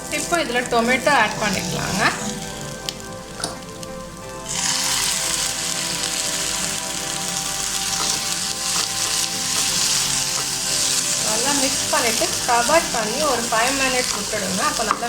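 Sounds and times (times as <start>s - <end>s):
tomato sizzling in hot oil: 0.0s - 15.0s.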